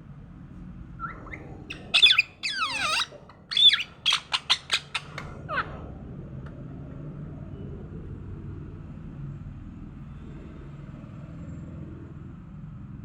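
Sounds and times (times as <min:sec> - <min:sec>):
parrot squawking: 0:01.0 - 0:05.7.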